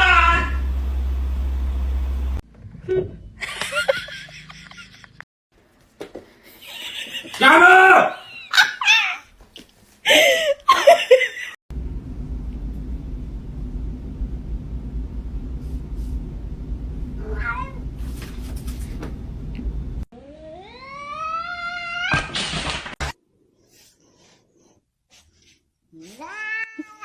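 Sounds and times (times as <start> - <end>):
cat meowing: 0.0 - 0.6, 17.2 - 17.8
low rumble: 0.0 - 2.4, 11.7 - 18.1.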